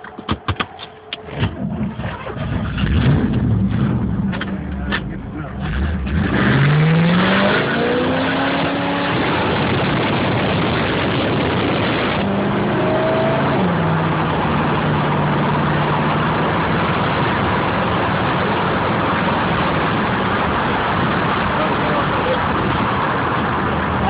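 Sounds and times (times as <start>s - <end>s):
car engine revving: 1.1s - 24.0s.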